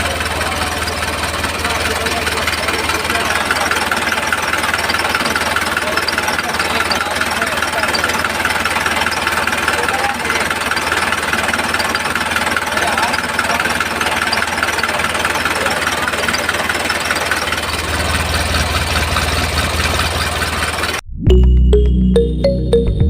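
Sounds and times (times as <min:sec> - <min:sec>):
low hum: 0:21.0 - 0:23.0.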